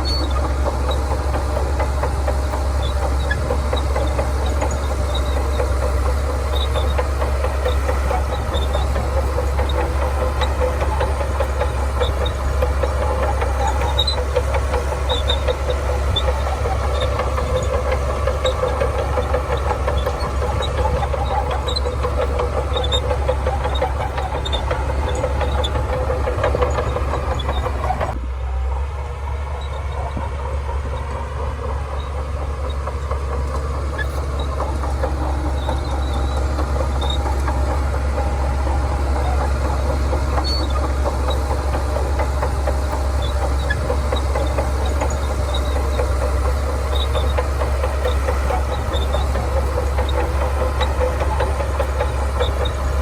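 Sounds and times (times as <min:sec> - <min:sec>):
bulldozer diesel engine running: 0:00.0 - 0:53.0.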